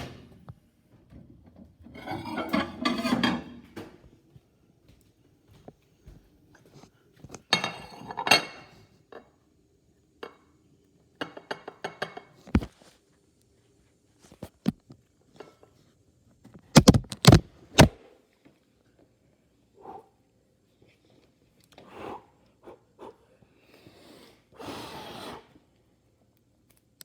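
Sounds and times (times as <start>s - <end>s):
dishes clinking and knocking: 1.9s - 4.0s, 7.4s - 8.8s, 11.2s - 12.4s.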